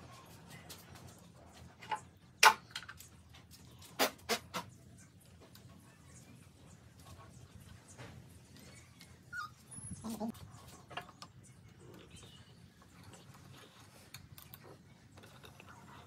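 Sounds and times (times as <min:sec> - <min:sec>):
dog whimpering: 0:09.2 - 0:10.3.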